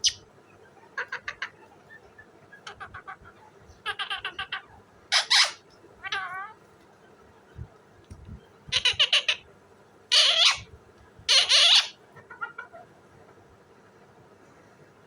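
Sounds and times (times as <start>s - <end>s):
faint bird chirps: 0.0s - 9.5s
parrot harsh squawks: 2.6s - 6.6s, 8.7s - 9.4s, 10.1s - 10.7s, 11.3s - 12.8s
parrot rattling chatter: 3.8s - 6.3s.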